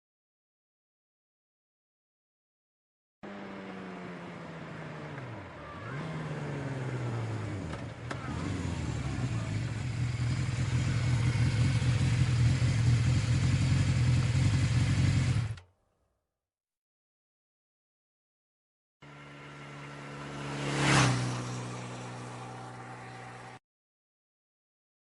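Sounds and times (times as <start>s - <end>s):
motorcycle engine: 3.2s - 15.7s, 19.0s - 23.6s.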